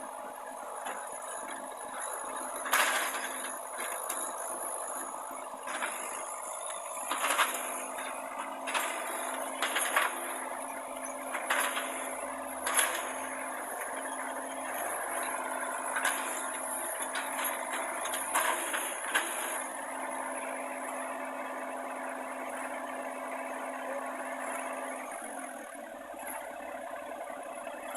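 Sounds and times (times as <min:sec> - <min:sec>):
excavator engine running: 0:00.0 - 0:27.9.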